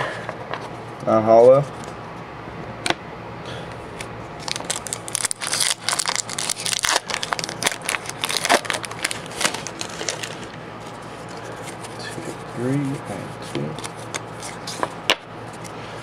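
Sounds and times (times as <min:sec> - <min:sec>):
foil wrapper crinkling and tearing: 0:04.4 - 0:10.6.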